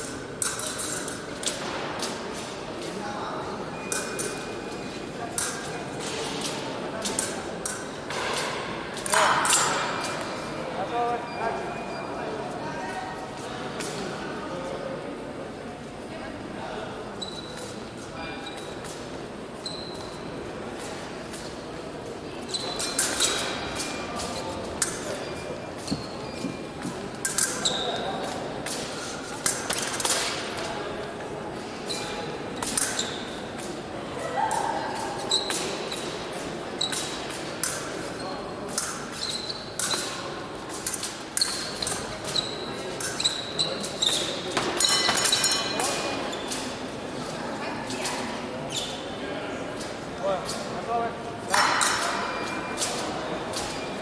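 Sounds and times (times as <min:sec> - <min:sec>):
fencing blades clicking: 0:00.0 - 0:02.5, 0:03.9 - 0:04.4, 0:05.4 - 0:05.7, 0:06.4 - 0:08.0, 0:22.8 - 0:25.1, 0:27.2 - 0:30.4, 0:32.6 - 0:33.7, 0:36.9 - 0:38.0, 0:38.7 - 0:42.4, 0:43.0 - 0:46.7
large hall noise: 0:00.0 - 0:54.0
shoes squeaking and stamping: 0:25.8 - 0:27.0.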